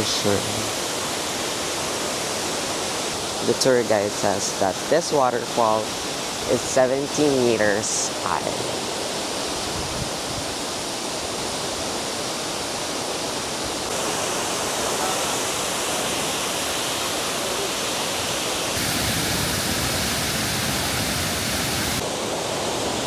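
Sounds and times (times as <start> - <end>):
waterfall roaring: 10.6 - 23.0.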